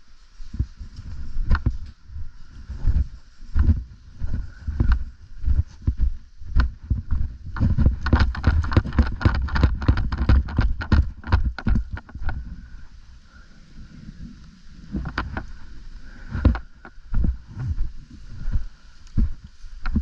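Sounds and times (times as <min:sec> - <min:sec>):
footsteps: 0:00.0 - 0:13.0, 0:14.2 - 0:20.0
wind on microphone: 0:00.0 - 0:20.0
camera thumping and jostling: 0:00.5 - 0:02.0, 0:02.8 - 0:12.6, 0:14.9 - 0:15.6, 0:16.3 - 0:18.6, 0:19.2 - 0:20.0
sharp crunching clicks: 0:07.5 - 0:12.4, 0:15.0 - 0:15.6.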